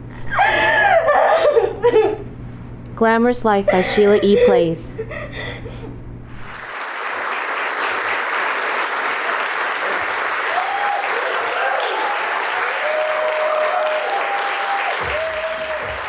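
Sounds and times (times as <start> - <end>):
audience applauding: 6.5 - 16.0.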